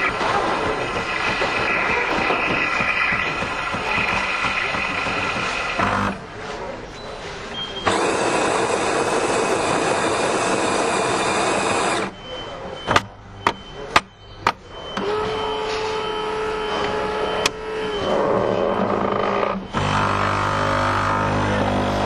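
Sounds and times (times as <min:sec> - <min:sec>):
coffee machine rushing noise: 0:00.0 - 0:06.2, 0:07.8 - 0:12.1
coffee machine mechanical hum: 0:00.0 - 0:06.4, 0:07.8 - 0:12.2, 0:15.0 - 0:22.0.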